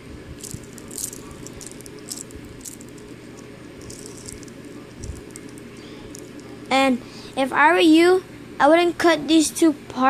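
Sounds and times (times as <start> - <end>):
low hum: 0.0 - 8.4
small object clicking and rattling: 0.4 - 6.6.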